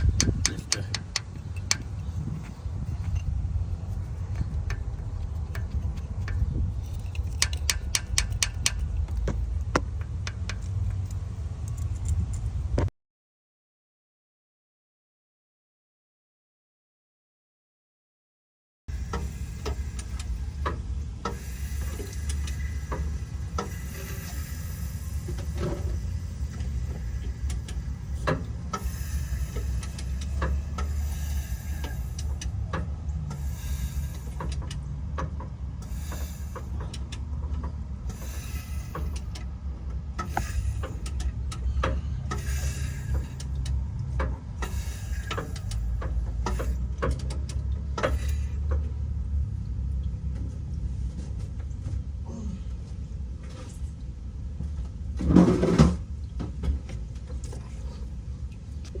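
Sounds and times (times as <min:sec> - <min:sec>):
metal tools clanking on engine parts: 0:00.0 - 0:12.6, 0:18.9 - 0:49.0
low steady rumble: 0:00.0 - 0:12.9, 0:18.9 - 0:59.0.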